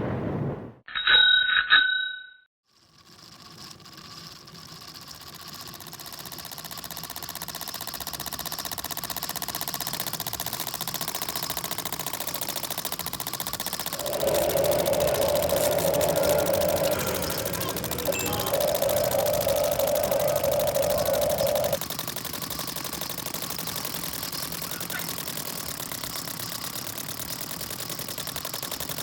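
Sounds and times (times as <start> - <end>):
bell ringing: 0.9 - 2.4
steady buzzing: 13.8 - 21.8.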